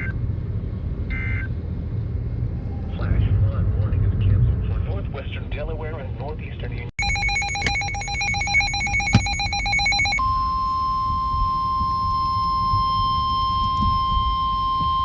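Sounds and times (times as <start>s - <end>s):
steady alarm tone: 7.0s - 15.0s.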